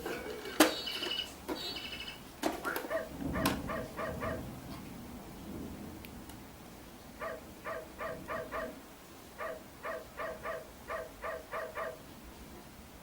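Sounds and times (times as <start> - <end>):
electronic toy bird chirps: 0.7 - 2.2.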